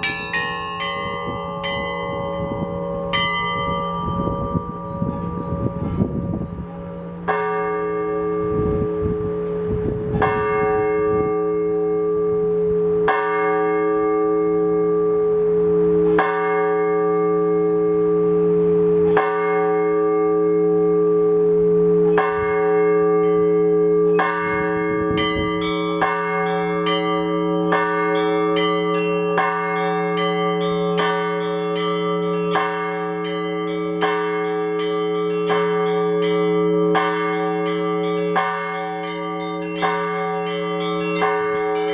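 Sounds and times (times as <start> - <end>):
small bells pealing: 0.0 - 8.8, 22.2 - 41.9
wind rumbling on microphone: 0.0 - 13.5, 22.2 - 26.4
heavy church bell striking: 0.0 - 41.9.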